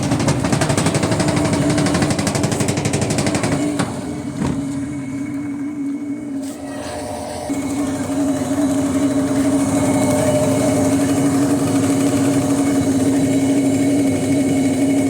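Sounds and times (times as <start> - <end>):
drain pump humming: 0.0 - 15.0
fast rattling buzz: 7.1 - 15.0.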